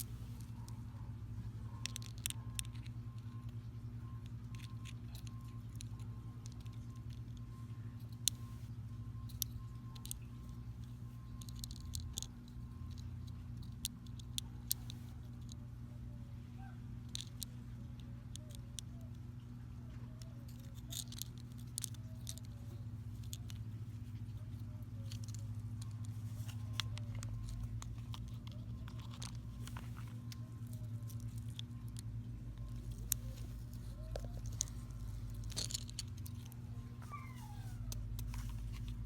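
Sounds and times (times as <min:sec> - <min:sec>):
steady low hum: 0:00.0 - 0:39.0
glass pebbles clicking: 0:09.2 - 0:15.5, 0:20.2 - 0:24.4, 0:25.0 - 0:36.6.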